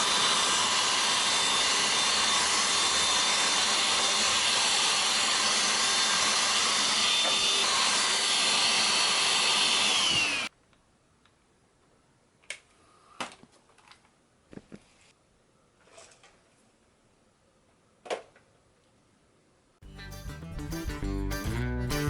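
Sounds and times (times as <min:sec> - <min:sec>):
handheld vacuum cleaner whine: 0:00.0 - 0:10.5.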